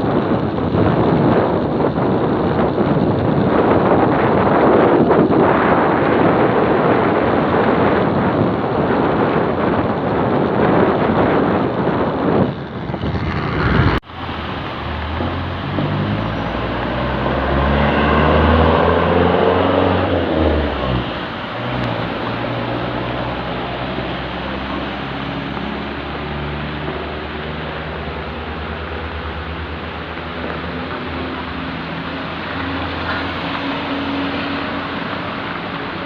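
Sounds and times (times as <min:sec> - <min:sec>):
wind buffeting microphone: 0:00.0 - 0:36.0
low rumbling drone: 0:09.9 - 0:36.0.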